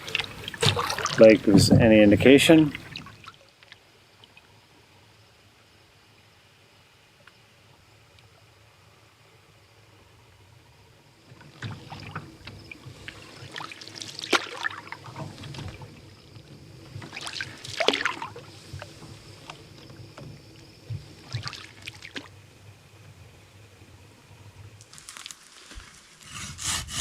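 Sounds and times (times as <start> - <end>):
water splashes and drips: 0.0 - 1.6, 2.5 - 4.5, 11.4 - 22.4
paddle strokes through water: 0.0 - 3.8, 11.2 - 24.0.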